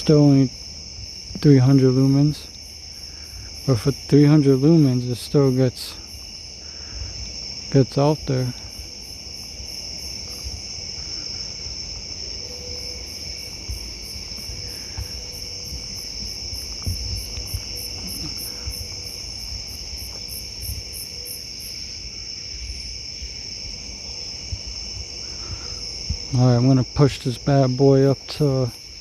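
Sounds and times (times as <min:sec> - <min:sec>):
crickets trilling: 0:00.0 - 0:29.0
pulsing insect chirp: 0:00.0 - 0:29.0
low thumps and rustles: 0:13.1 - 0:21.2.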